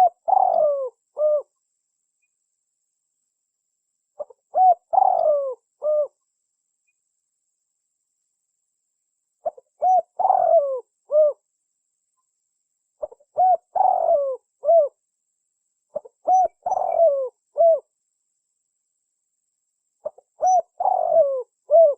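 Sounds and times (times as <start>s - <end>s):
dove cooing: 0.0s - 1.5s, 4.2s - 6.2s, 9.4s - 11.4s, 13.0s - 15.0s, 15.9s - 17.9s, 20.0s - 21.9s.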